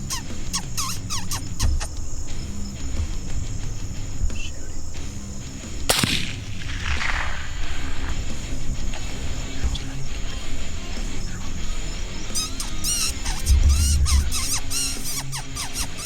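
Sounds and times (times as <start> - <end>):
short chirping: 0.0 - 5.2, 5.8 - 16.0
rifle shot echoing: 5.7 - 9.4.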